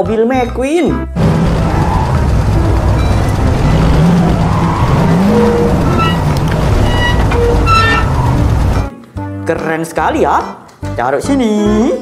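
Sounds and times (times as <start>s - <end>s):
music: 0.0s - 1.2s, 1.9s - 12.0s
race car engines: 1.2s - 8.9s.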